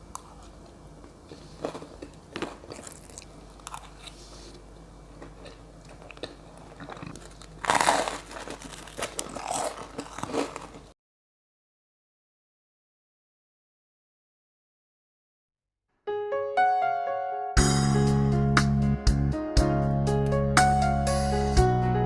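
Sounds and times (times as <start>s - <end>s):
person chewing crunchy food: 0.0s - 11.0s.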